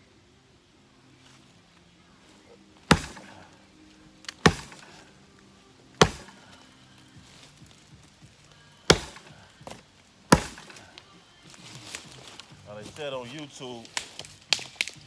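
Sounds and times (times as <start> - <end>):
axe chopping tree trunk: 2.8 - 5.2, 5.9 - 11.0, 13.8 - 15.0.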